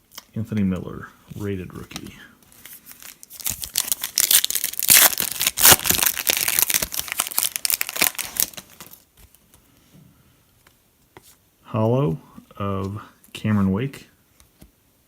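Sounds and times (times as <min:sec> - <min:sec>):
foil wrapper crinkling and tearing: 0:02.6 - 0:09.1.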